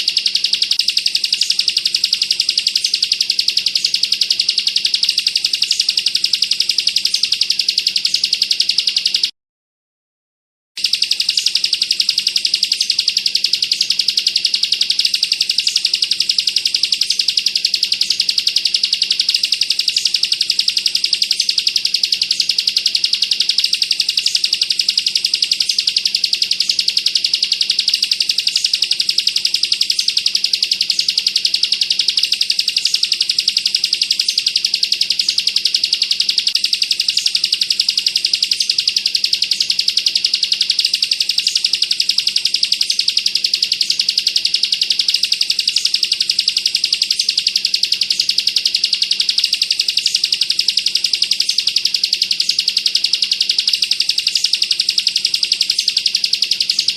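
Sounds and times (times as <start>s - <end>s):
bird rattling trill: 0.0s - 9.3s, 10.8s - 56.9s.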